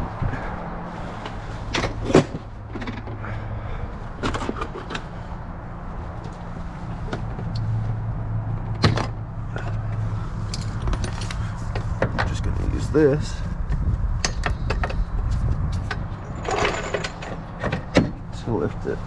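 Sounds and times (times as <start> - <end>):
tools clanking in toolbox: 16.3 - 18.2.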